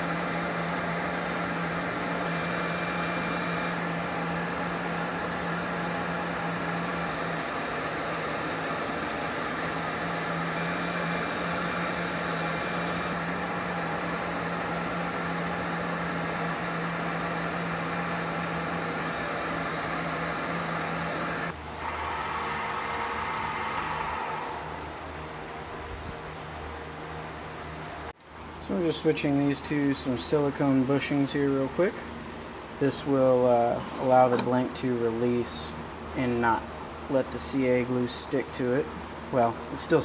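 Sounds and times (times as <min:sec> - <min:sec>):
wood lathe motor hum: 0:00.0 - 0:25.8.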